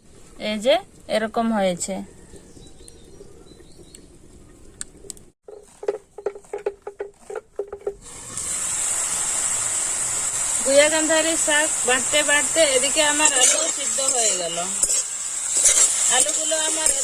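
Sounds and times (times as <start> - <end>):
faint clicks: 4.7 - 5.3
potatoes sizzling in pan: 8.2 - 17.0.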